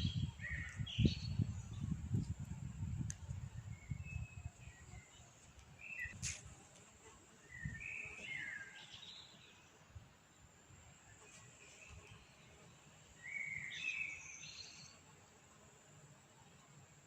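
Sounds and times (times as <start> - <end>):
small birds chirping: 0.0 - 6.4, 7.4 - 9.7, 11.0 - 15.1.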